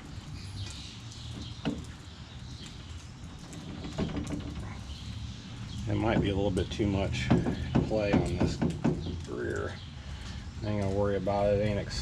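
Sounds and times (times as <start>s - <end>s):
wheel hub knocking: 5.9s - 9.3s.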